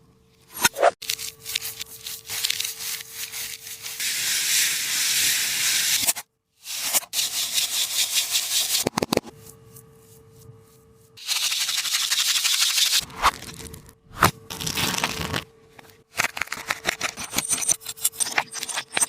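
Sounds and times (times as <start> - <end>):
tape and plastic crinkling: 14.5 - 17.0.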